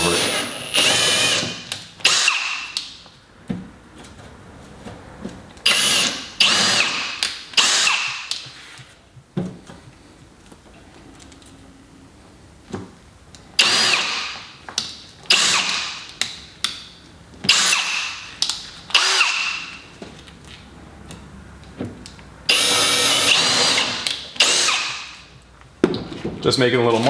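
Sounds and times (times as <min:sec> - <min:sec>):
electric drill drilling into wood: 0:00.0 - 0:02.8, 0:05.7 - 0:08.3, 0:13.6 - 0:14.4, 0:15.3 - 0:16.0, 0:17.5 - 0:18.2, 0:18.9 - 0:19.6, 0:22.5 - 0:25.2.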